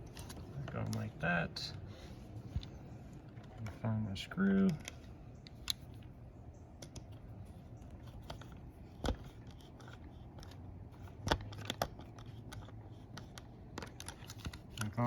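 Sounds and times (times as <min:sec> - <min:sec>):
small plastic parts clicking: 0:04.4 - 0:06.1, 0:07.8 - 0:15.0.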